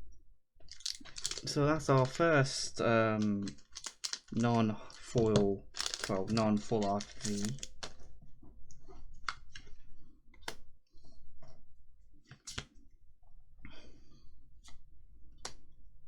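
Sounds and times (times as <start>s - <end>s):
cards sliding: 0.7s - 2.2s, 3.2s - 7.9s.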